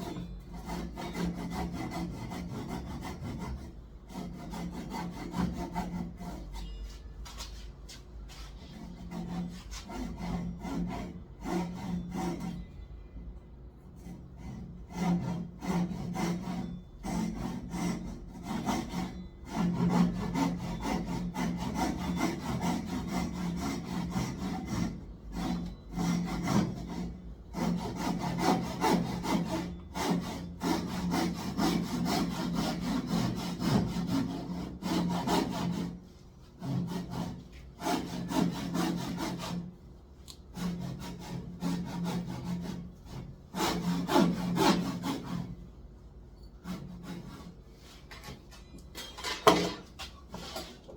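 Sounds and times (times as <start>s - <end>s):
hand saw cutting wood: 0.0s - 6.7s, 8.6s - 12.6s, 14.0s - 39.7s, 40.5s - 45.6s, 46.6s - 48.2s.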